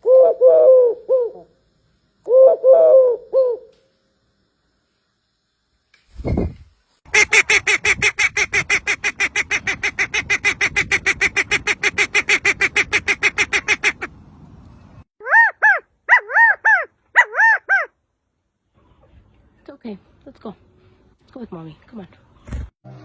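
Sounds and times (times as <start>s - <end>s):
bird calling in harsh notes: 15.2s - 18.0s.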